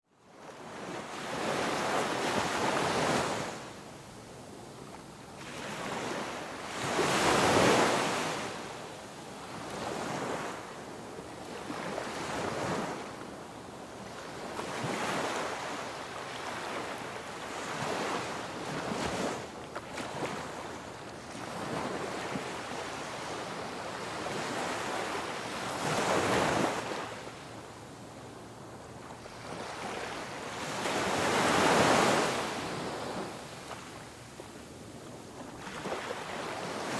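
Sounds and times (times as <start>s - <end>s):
ocean waves breaking on shore: 0.3s - 3.8s, 5.3s - 36.9s.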